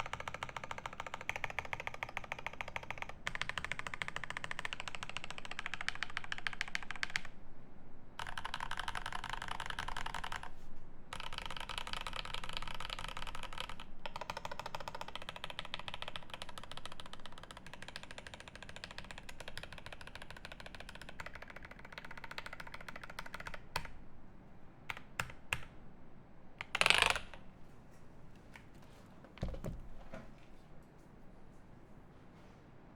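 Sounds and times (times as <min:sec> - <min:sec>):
fast typing on mechanical keyboard: 0:00.0 - 0:07.3, 0:08.2 - 0:10.5, 0:11.2 - 0:23.9, 0:26.6 - 0:27.4.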